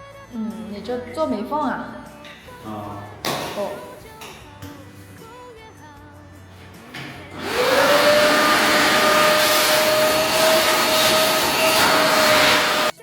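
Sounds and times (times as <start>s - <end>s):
vacuum cleaner motor whine: 7.3s - 13.0s
vacuum cleaner rush of air: 7.3s - 13.0s.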